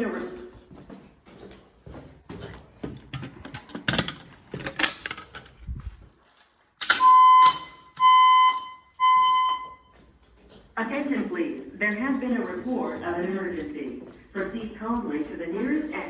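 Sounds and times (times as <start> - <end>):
fire alarm beeps: 6.8 - 10.2.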